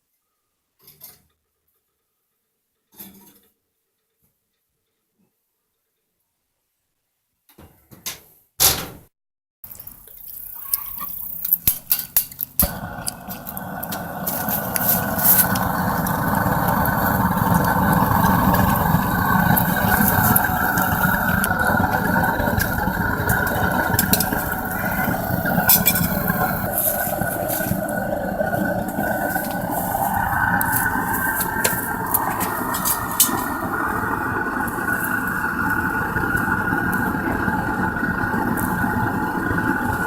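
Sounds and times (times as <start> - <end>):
propane burner roaring: 9.7 - 40.0.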